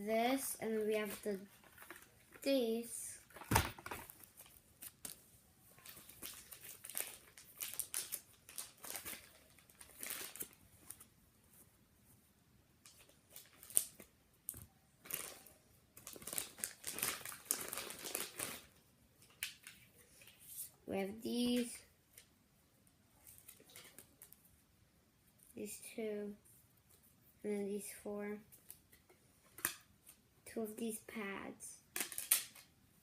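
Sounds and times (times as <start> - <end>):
packaging crinkling and rustling: 1.0 - 2.4, 5.8 - 11.1, 12.9 - 14.1, 15.0 - 19.8.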